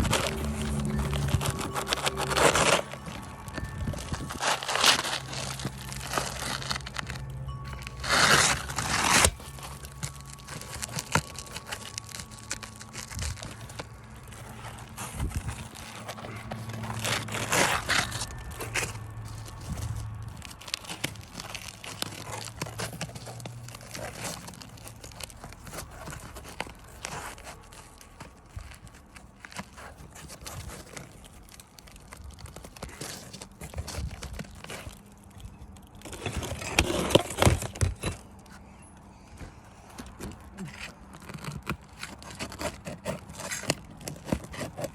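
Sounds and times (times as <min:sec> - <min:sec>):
roof shingles tearing and crackling: 0:00.0 - 0:44.9.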